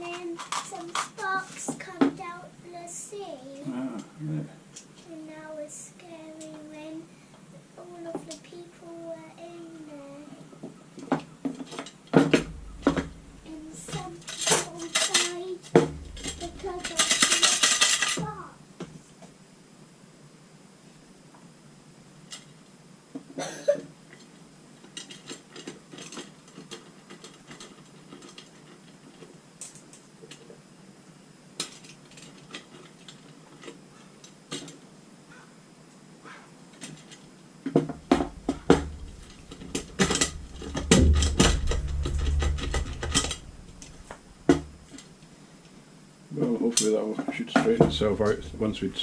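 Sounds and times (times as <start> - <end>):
low handling knocks: 12.3 - 14.1, 15.8 - 17.0, 38.1 - 44.9.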